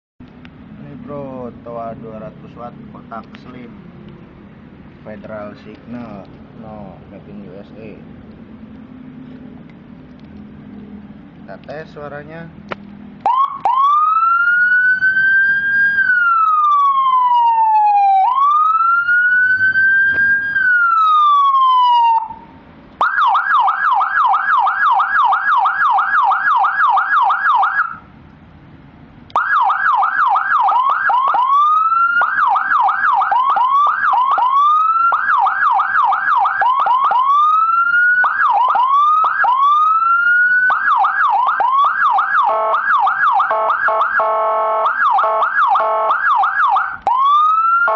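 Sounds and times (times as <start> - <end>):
electronic siren wail: 13.2 - 28.1, 29.4 - 47.9
siren whoops: 13.2 - 28.1, 29.3 - 47.9
siren yelp: 13.2 - 28.1, 29.3 - 47.9.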